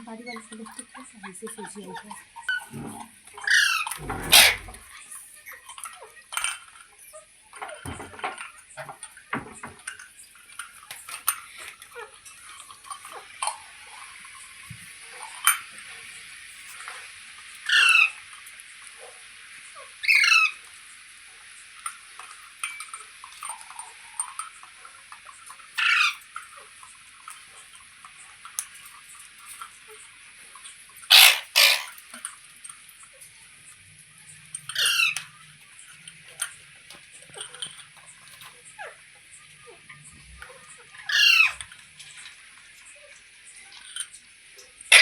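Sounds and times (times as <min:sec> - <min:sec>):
parakeet squawking: 0:03.4 - 0:04.9, 0:17.7 - 0:18.2, 0:20.0 - 0:20.6, 0:25.8 - 0:26.2, 0:31.1 - 0:32.0, 0:34.7 - 0:35.2, 0:41.0 - 0:41.6.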